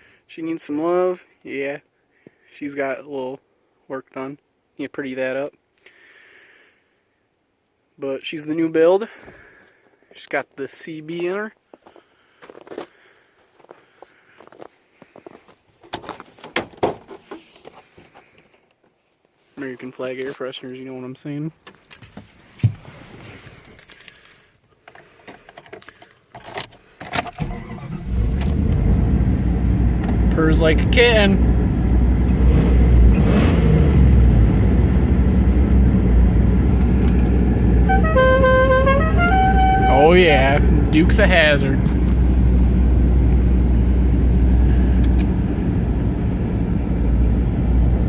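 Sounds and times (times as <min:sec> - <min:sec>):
keys jangling: 0:21.8 - 0:26.7
car engine starting and rumbling: 0:27.2 - 0:48.0
faint engine ticks: 0:29.9 - 0:33.5, 0:44.4 - 0:46.3.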